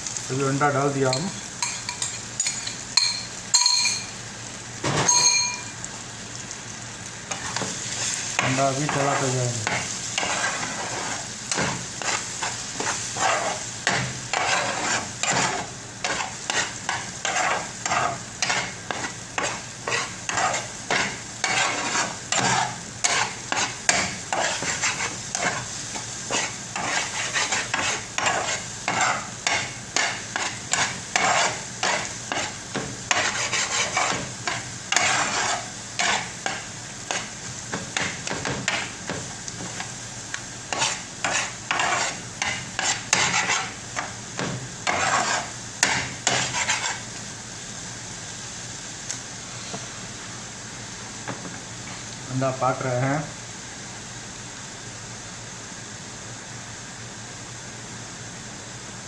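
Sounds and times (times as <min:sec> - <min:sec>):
sizzle of frying: 0:00.0 - 0:59.0
spatula scraping a pan: 0:07.3 - 0:40.0, 0:40.6 - 0:47.2.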